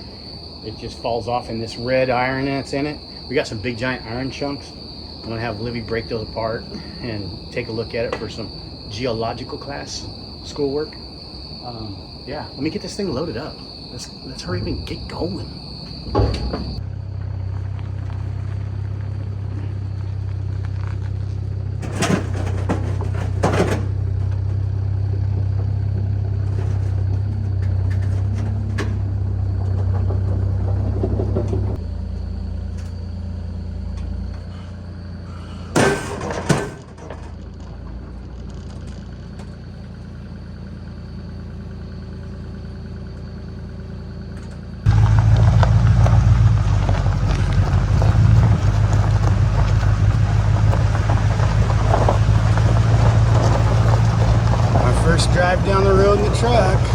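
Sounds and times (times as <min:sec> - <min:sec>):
heavy engine running: 0:00.0 - 0:56.9
loud rumble: 0:44.8 - 0:56.9.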